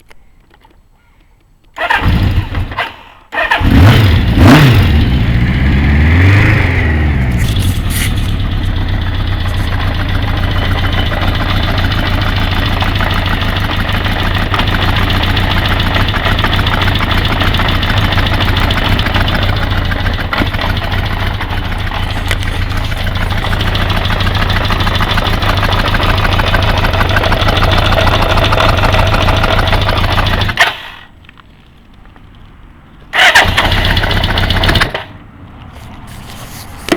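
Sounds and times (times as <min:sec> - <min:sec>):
motorcycle engine revving and idling: 0:01.8 - 0:31.1, 0:33.1 - 0:36.9
engine ticking and clacking: 0:07.2 - 0:31.1, 0:33.1 - 0:35.2.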